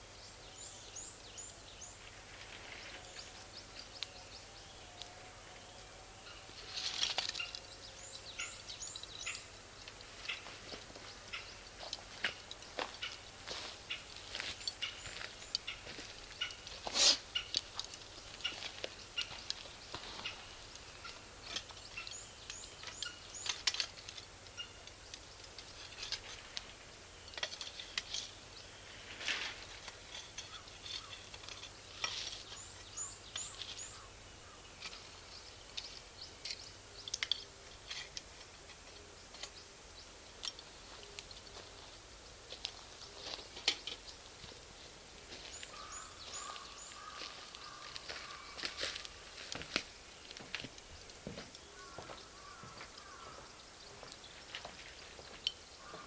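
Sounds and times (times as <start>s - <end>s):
small birds chirping: 0.0s - 56.0s
charcoal fire crackling and popping: 6.4s - 45.4s, 46.4s - 51.7s.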